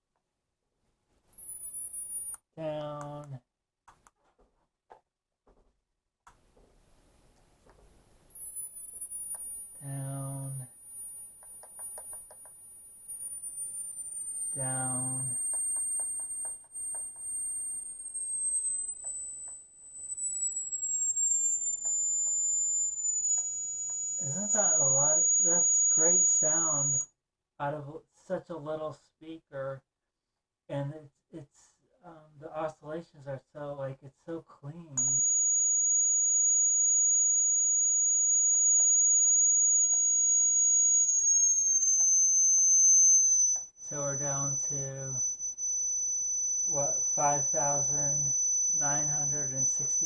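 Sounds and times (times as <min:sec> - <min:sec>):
steady high-pitched tone: 0:14.5 - 0:15.4, 0:20.3 - 0:27.0, 0:35.0 - 0:50.0.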